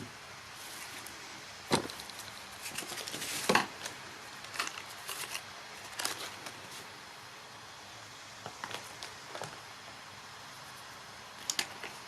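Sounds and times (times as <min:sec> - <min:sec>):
faint hiss: 0:00.0 - 0:12.0.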